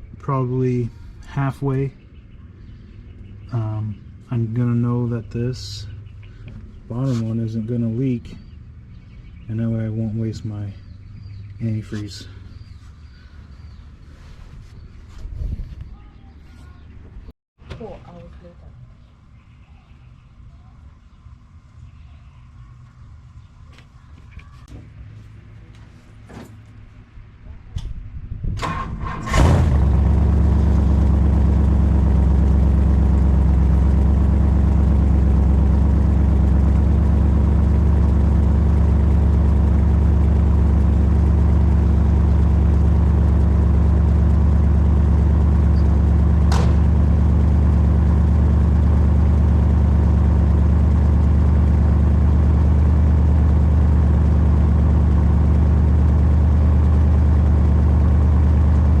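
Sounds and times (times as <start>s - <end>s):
car engine idling: 0.0s - 14.3s, 28.6s - 59.0s.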